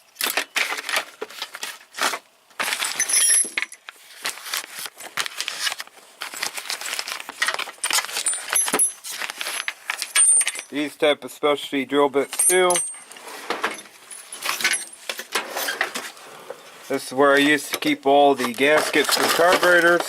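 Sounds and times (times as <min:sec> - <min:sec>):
metal tools clinking: 0:02.8 - 0:03.9, 0:06.3 - 0:10.9, 0:12.2 - 0:20.0.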